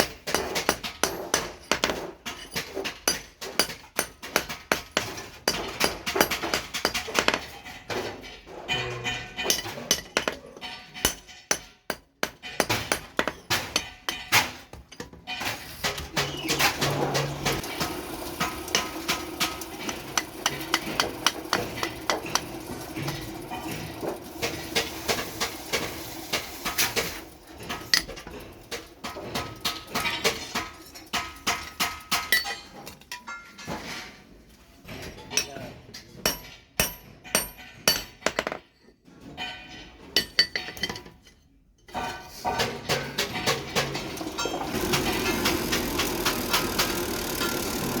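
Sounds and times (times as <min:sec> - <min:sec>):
hammer striking steel on anvil: 0:03.0 - 0:27.2, 0:36.2 - 0:38.6.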